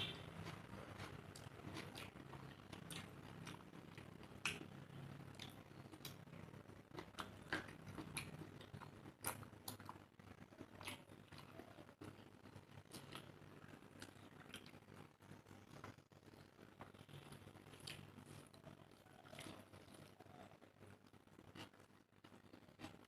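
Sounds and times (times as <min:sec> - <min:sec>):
chewing mouth sounds: 0:00.4 - 0:06.3, 0:13.9 - 0:15.1.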